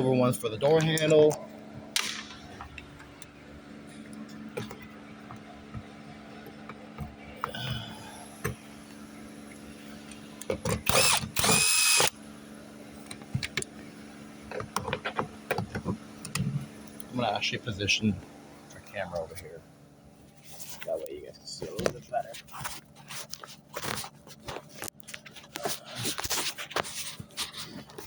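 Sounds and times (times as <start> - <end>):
power driver spinning bolt: 10.4 - 12.1.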